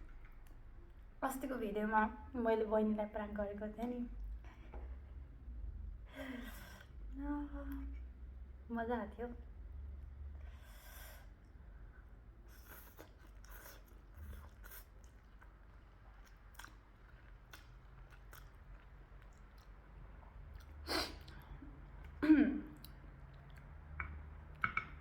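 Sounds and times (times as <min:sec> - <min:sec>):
mouth chewing wet smacks: 0:12.5 - 0:24.6.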